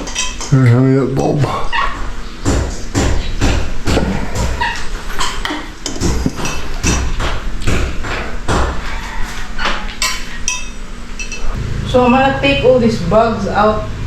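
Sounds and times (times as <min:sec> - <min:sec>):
sharp knocks: 0:02.0 - 0:08.9.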